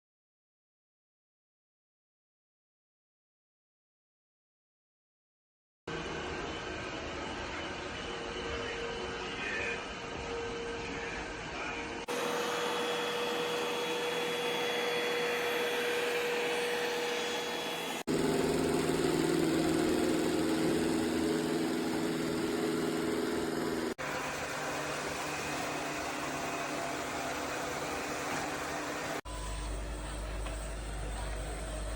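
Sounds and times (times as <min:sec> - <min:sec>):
robot vacuum motor humming: 0:12.1 - 0:31.9.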